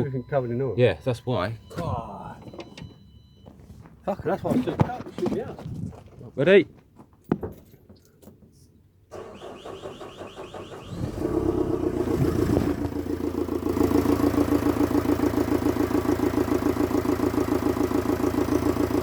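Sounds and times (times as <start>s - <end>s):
van engine idling: 0.0s - 3.3s, 9.1s - 19.0s.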